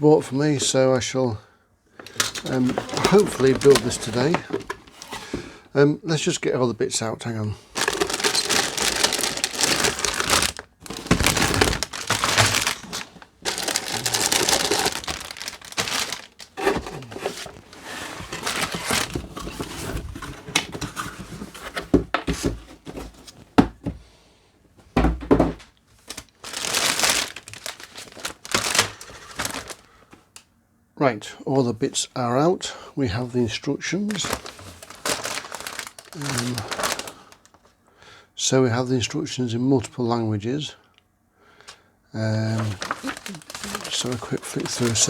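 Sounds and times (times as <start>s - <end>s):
plastic packaging crinkling: 2.0s - 5.5s, 7.7s - 21.1s, 26.0s - 30.0s, 34.0s - 37.7s, 42.3s - 45.0s.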